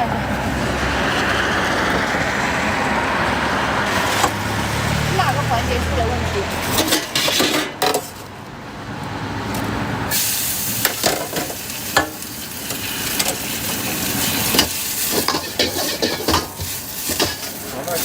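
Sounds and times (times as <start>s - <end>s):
rice sizzling in a pan: 10.1s - 18.0s
spatula clanking against pan: 14.5s - 17.6s.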